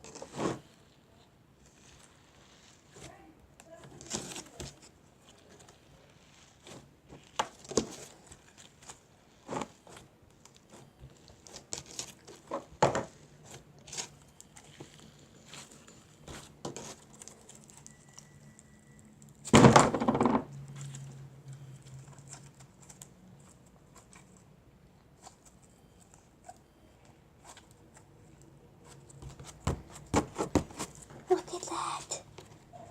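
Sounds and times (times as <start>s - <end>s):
putty clicking and crinkling: 3.0s - 18.4s.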